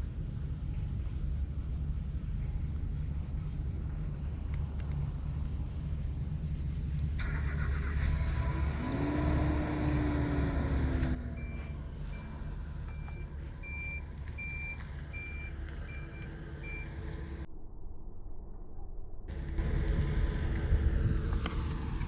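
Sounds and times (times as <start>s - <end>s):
vehicle engine rumbling: 0.0s - 22.0s
gliding whine: 0.7s - 22.0s
reversing alarm beeping: 11.1s - 17.0s.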